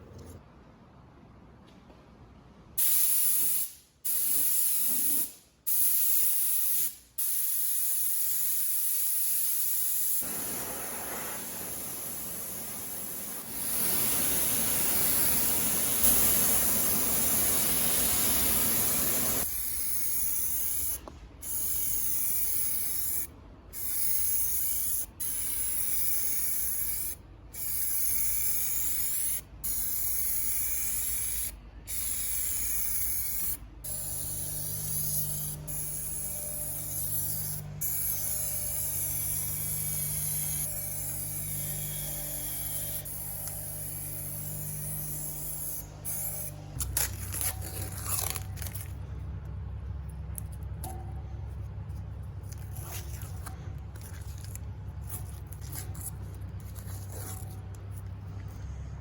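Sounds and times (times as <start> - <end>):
compressed air hissing: 2.8 - 33.6
low hum: 45.8 - 59.0.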